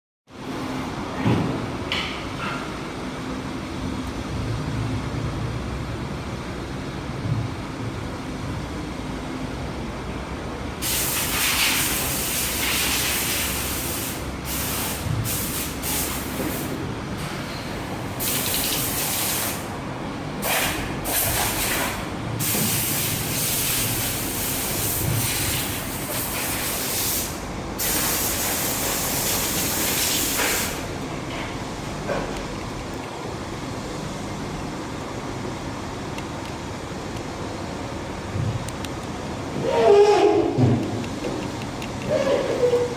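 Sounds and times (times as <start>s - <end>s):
loud hiss: 10.8s - 17.5s, 18.2s - 19.7s, 20.4s - 30.9s.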